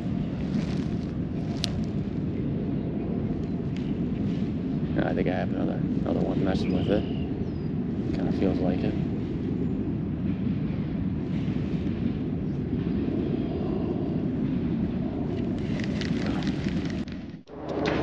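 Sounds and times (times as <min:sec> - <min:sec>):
faint rustling and crackling: 0:00.0 - 0:02.2, 0:15.2 - 0:17.4
wind buffeting microphone: 0:00.0 - 0:18.0.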